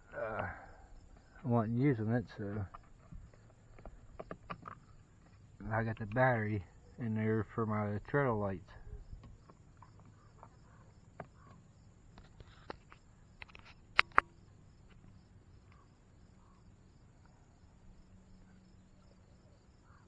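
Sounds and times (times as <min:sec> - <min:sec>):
crickets chirping: 0:00.0 - 0:20.0
handling clicks: 0:12.2 - 0:15.0.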